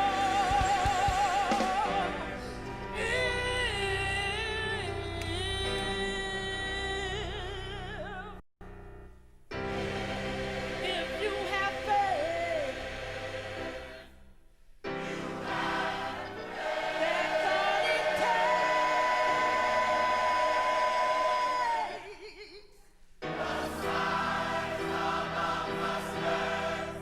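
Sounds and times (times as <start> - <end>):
gospel choir singing: 0.0 - 6.1, 9.6 - 27.0.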